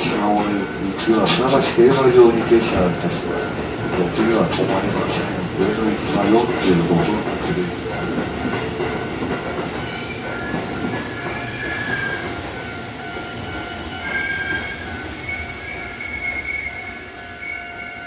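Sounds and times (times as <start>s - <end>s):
electric train running rumble: 0.0s - 18.0s
high-pitched wheel squeal: 9.7s - 12.2s, 14.1s - 18.0s.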